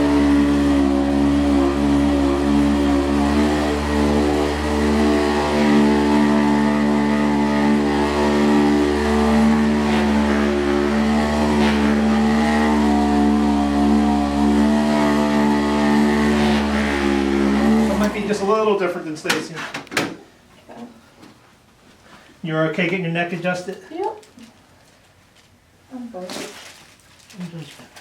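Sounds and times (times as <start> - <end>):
vibrating instrument motor buzz: 0.0 - 18.3.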